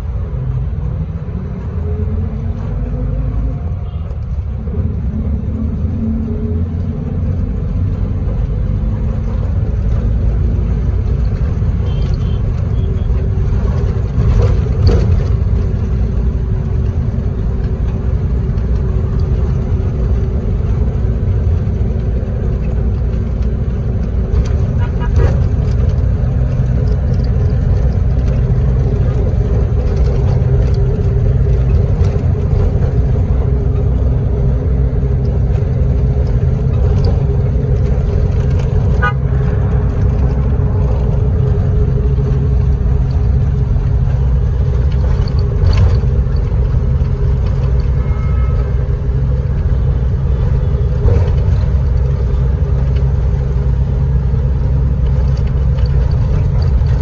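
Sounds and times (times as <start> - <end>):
bus engine rumbling: 0.0 - 57.0
busy traffic: 0.0 - 57.0
vehicle horn toots: 11.8 - 13.1, 39.0 - 39.2, 47.9 - 48.9.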